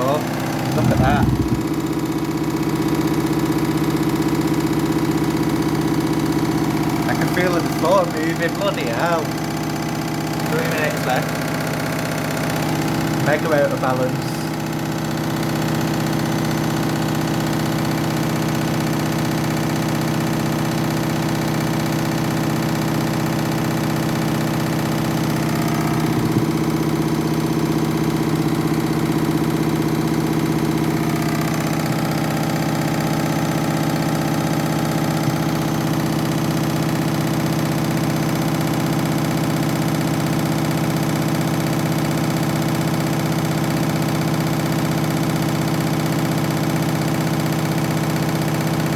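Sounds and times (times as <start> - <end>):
washing machine drum spinning: 0.0 - 13.9, 14.5 - 48.9.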